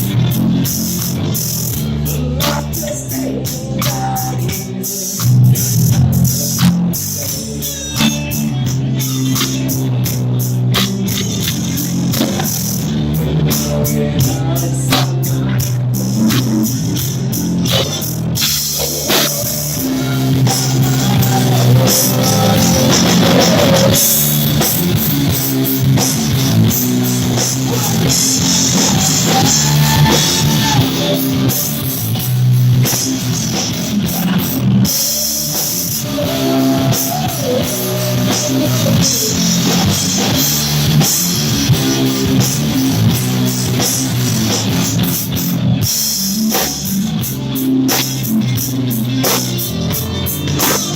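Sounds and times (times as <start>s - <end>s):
rock band playing: 0.0s - 50.9s.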